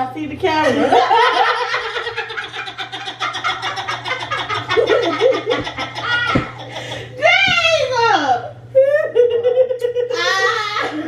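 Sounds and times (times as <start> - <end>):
high-pitched cackling laughter: 1.1 - 7.1.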